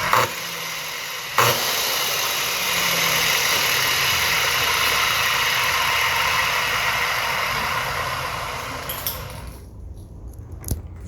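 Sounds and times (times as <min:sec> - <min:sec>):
electric chainsaw running: 0:00.0 - 0:09.6.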